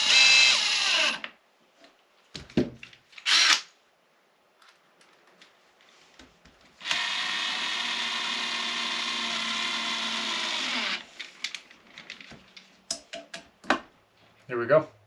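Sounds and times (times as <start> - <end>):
cordless drill whirring: 0.0 - 1.2, 3.2 - 3.7, 6.8 - 11.1.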